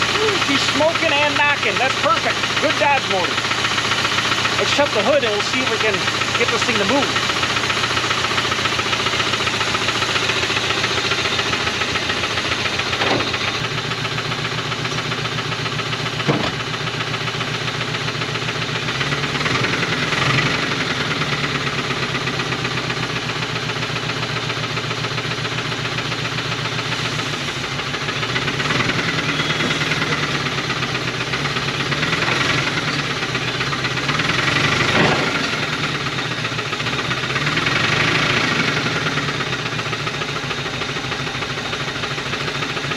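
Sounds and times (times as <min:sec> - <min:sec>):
truck engine with rod knock: 0:11.5 - 0:13.8, 0:16.0 - 0:16.8, 0:31.9 - 0:36.2.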